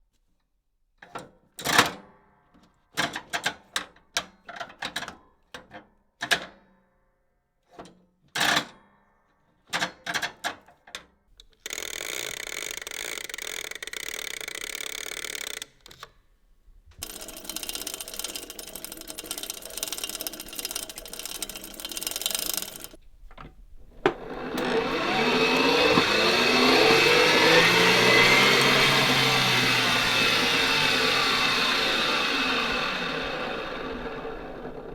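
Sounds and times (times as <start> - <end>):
mechanical clicks and clacks: 11.4 - 16.1, 17.0 - 34.9
steady whirring: 17.0 - 34.9
motor whir sliding pitch: 24.0 - 34.9.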